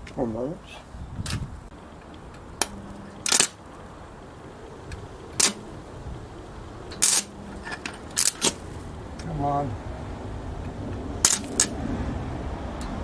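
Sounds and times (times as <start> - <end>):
tool clattering on metal parts: 2.6 - 3.6, 5.4 - 5.6, 6.9 - 8.8, 11.2 - 11.7.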